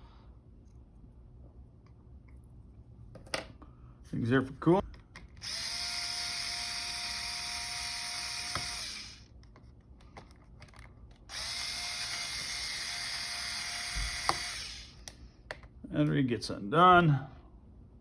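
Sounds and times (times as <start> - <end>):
electric screwdriver running: 5.4 - 9.3, 11.3 - 15.0.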